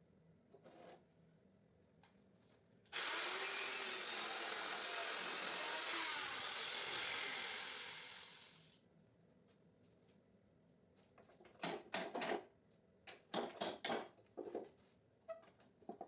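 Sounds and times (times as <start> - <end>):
angle grinder whining: 3.0 - 8.8.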